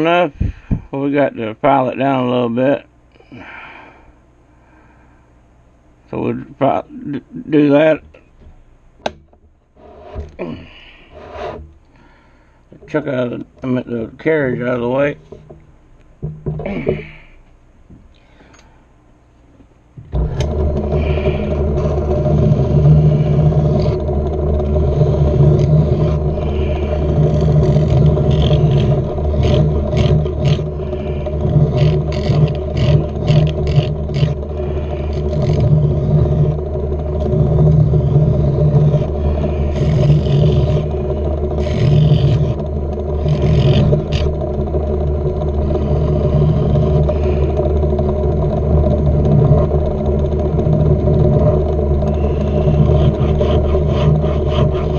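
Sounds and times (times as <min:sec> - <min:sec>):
hand file scraping steel: 0:09.8 - 0:11.7, 0:24.8 - 0:36.6, 0:37.2 - 0:44.3, 0:52.2 - 0:54.9
metal lathe running: 0:20.0 - 0:54.9.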